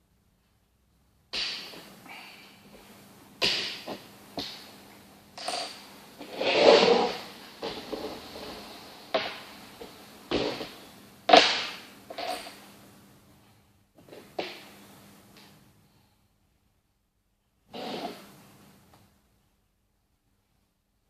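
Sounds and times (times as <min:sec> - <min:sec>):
piece scraping on board: 0:05.4 - 0:09.4.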